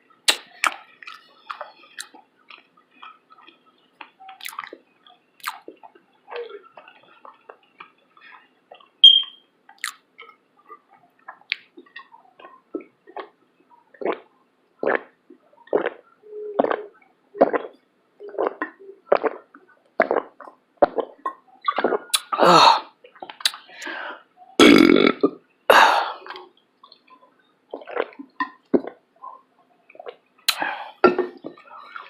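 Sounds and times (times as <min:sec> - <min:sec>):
wet mouth noises: 0:00.2 - 0:04.8, 0:05.4 - 0:08.0, 0:08.7 - 0:10.4, 0:11.3 - 0:16.0, 0:16.6 - 0:23.9, 0:24.6 - 0:32.0
woman burping loudly: 0:24.6 - 0:26.4.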